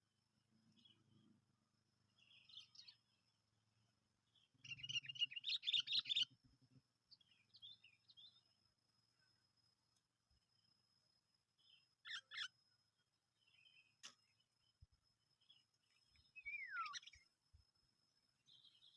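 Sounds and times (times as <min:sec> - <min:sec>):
bird chirps and chattering calls: 0:04.6 - 0:06.3, 0:12.0 - 0:12.5, 0:16.4 - 0:17.2.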